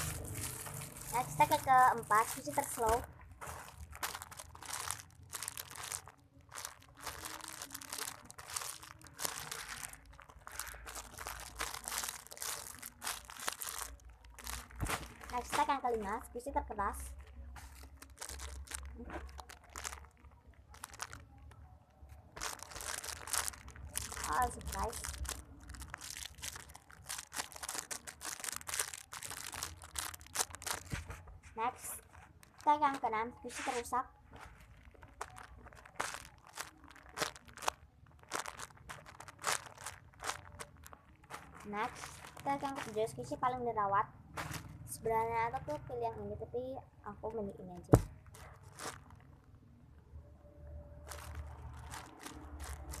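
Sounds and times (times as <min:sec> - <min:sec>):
plastic wrapper crinkling: 0:00.0 - 0:43.7, 0:44.4 - 0:45.8, 0:47.3 - 0:49.6, 0:51.0 - 0:53.0.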